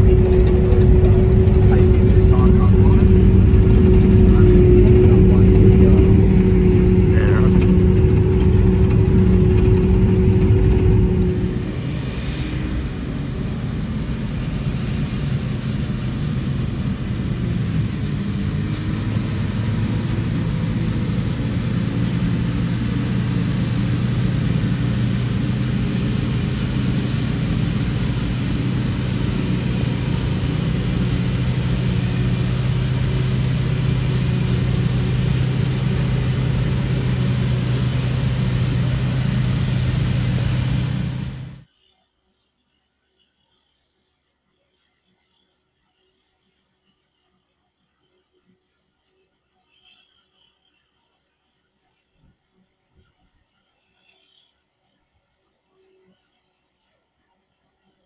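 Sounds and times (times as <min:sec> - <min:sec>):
diesel machinery engine hum: 0:00.0 - 0:41.7
low steady drone: 0:00.0 - 0:41.7.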